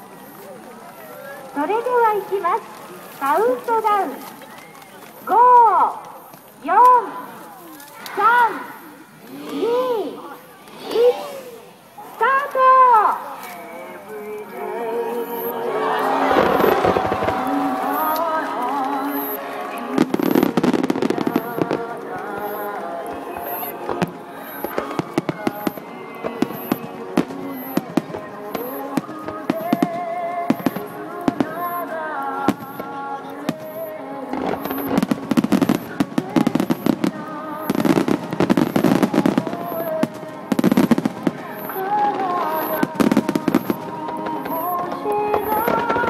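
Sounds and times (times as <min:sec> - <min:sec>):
faint song with voice: 0:05.2 - 0:46.0
fireworks bangs and crackles: 0:15.3 - 0:46.0.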